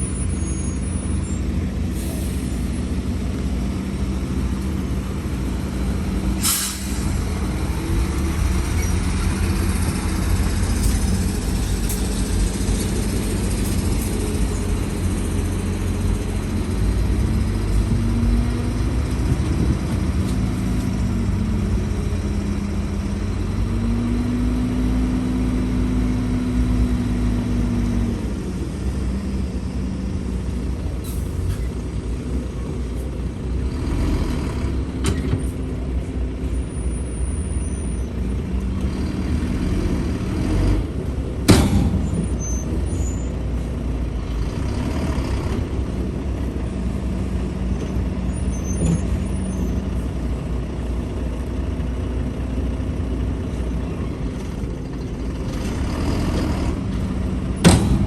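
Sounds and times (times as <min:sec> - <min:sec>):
diesel machinery droning: 0:00.0 - 0:58.0
sharp bang: 0:41.5 - 0:42.4, 0:57.6 - 0:58.0.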